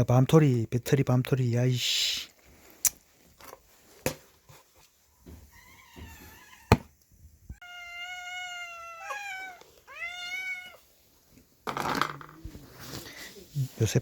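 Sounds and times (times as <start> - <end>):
cat meowing: 7.6 - 10.9.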